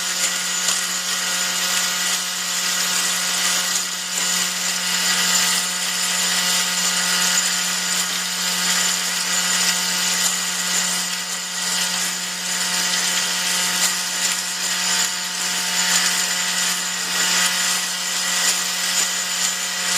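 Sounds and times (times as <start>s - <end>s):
machinery humming and whining: 4.9s - 19.9s.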